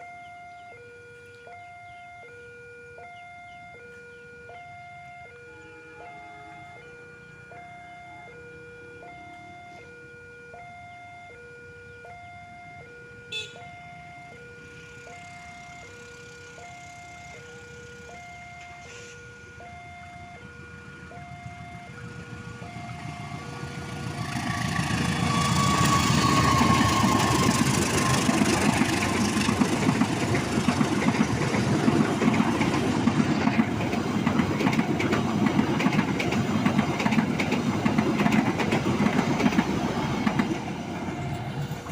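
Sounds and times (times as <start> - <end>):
level crossing alarm two tones: 0.0 - 0.9, 1.5 - 14.5, 16.6 - 29.0
train passing at speed: 14.3 - 41.9.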